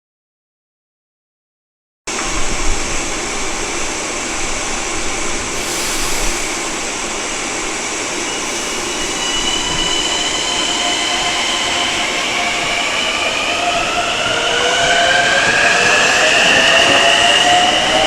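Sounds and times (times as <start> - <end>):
diesel train passing: 2.1 - 18.0
high wheel squeal: 8.0 - 18.0.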